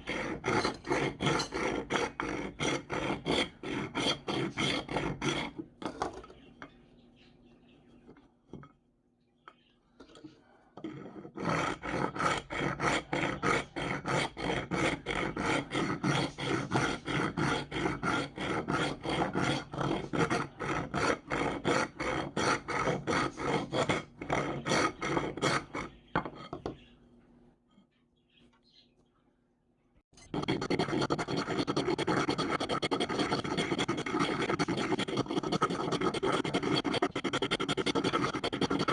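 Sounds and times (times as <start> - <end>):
file scraping: 0.0 - 6.3, 10.8 - 26.8, 30.2 - 38.9.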